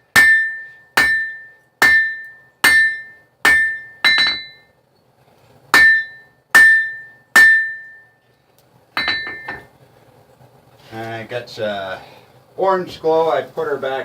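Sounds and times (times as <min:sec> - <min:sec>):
hammer striking on anvil: 0:00.1 - 0:04.7, 0:05.7 - 0:08.0, 0:09.0 - 0:09.7.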